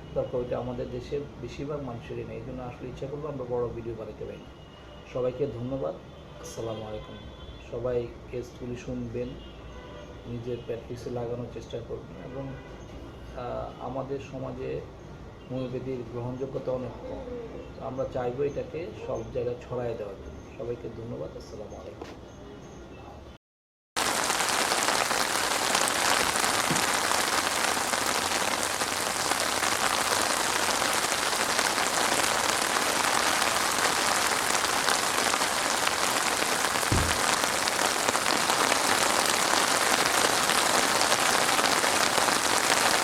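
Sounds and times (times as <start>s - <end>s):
steady hiss: 24.0s - 43.0s
faint low thump: 36.9s - 37.4s.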